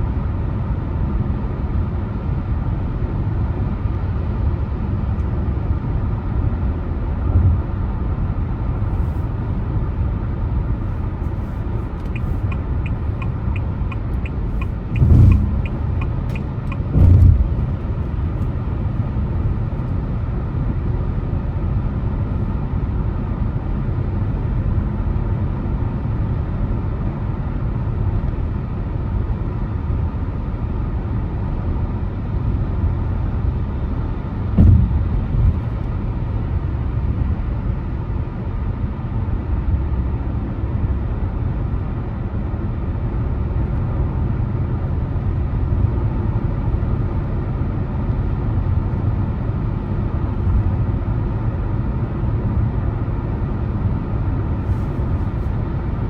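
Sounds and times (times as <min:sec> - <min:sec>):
car road and engine rumble: 0:00.0 - 0:56.0
turn signal ticking: 0:11.6 - 0:17.6
low thumps: 0:12.2 - 0:17.8, 0:34.6 - 0:35.6.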